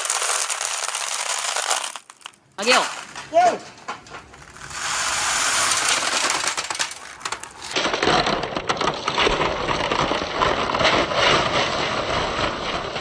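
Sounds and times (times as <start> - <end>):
balls rattling down wooden track: 0.0 - 7.8.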